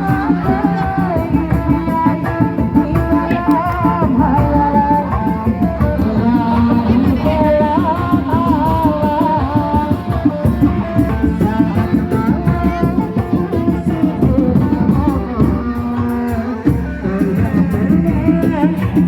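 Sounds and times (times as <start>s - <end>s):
fast hand drums: 0.0s - 19.0s.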